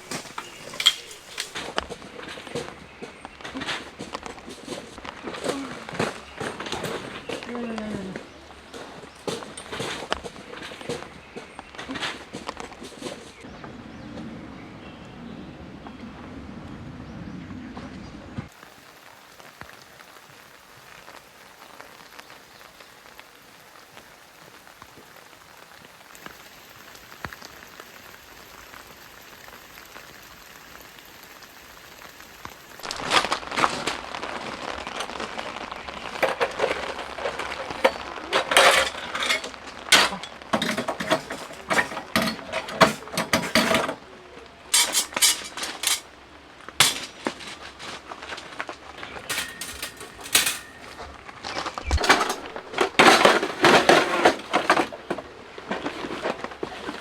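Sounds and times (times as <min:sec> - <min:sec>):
objects clicking and clinking: 0:00.0 - 0:01.8, 0:05.4 - 0:07.5, 0:09.2 - 0:11.0, 0:34.6 - 0:44.0, 0:44.8 - 0:46.1, 0:46.8 - 0:48.0, 0:49.0 - 0:56.1
rain on a tent: 0:00.0 - 0:13.6, 0:18.4 - 0:57.0.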